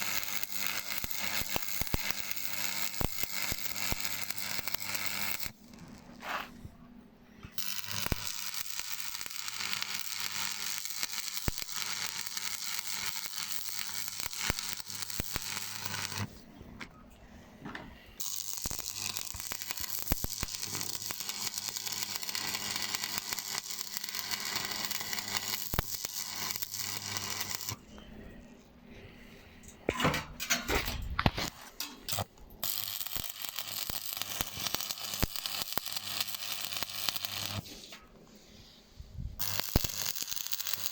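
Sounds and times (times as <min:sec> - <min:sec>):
welding arc crackling and sizzling: 0:00.0 - 0:06.5, 0:07.5 - 0:16.4, 0:18.2 - 0:27.9, 0:30.4 - 0:38.0, 0:39.4 - 0:40.9.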